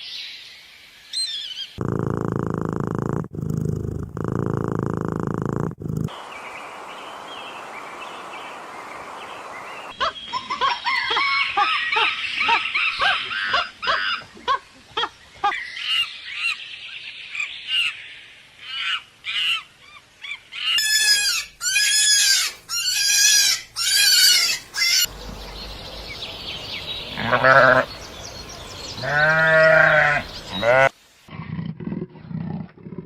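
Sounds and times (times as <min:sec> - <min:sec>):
high squealing bird calls: 0:18.6 - 0:30.9
waterfowl honking: 0:20.8 - 0:28.3.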